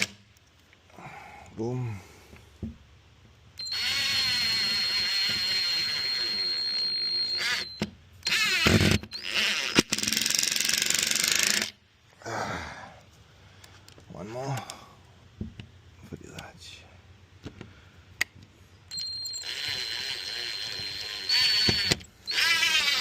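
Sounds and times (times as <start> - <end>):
power driver driving screws: 3.6 - 11.8, 18.9 - 23.0.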